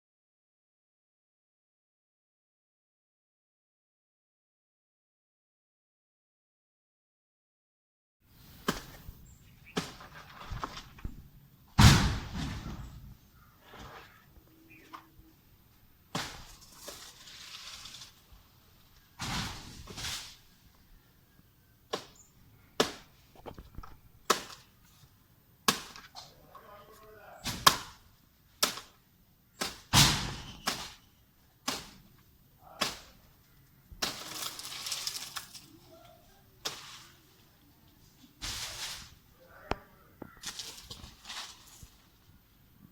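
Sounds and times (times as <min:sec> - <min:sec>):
rustling: 0:08.4 - 0:11.4, 0:16.1 - 0:21.1, 0:32.9 - 0:42.6
blade chopping tree: 0:22.8 - 0:23.1, 0:25.7 - 0:26.1, 0:27.5 - 0:28.0, 0:28.6 - 0:29.0, 0:29.6 - 0:31.0.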